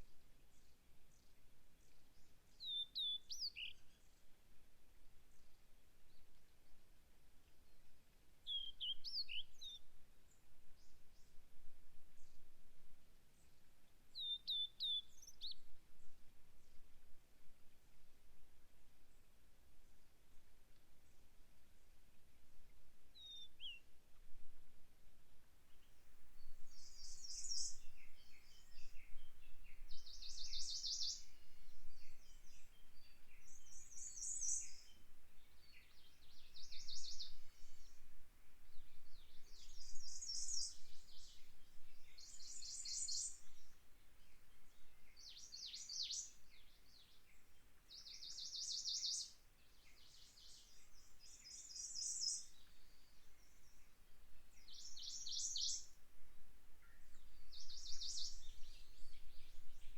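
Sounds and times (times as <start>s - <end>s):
faint low wind: 0.0s - 59.9s
songbirds trilling: 26.3s - 38.1s, 49.9s - 53.8s.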